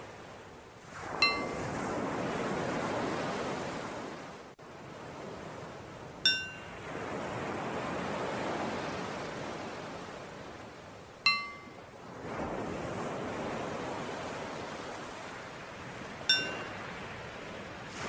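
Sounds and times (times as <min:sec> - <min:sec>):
ocean waves washing: 0:00.0 - 0:18.0
small bell ringing: 0:01.2 - 0:01.6, 0:06.3 - 0:06.7, 0:11.3 - 0:11.8, 0:16.3 - 0:16.8.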